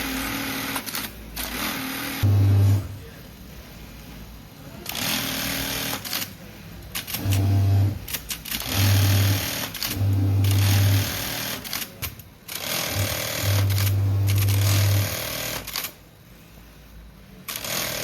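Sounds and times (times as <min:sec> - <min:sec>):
sewing machine stitching: 0:06.9 - 0:16.0, 0:17.5 - 0:18.0.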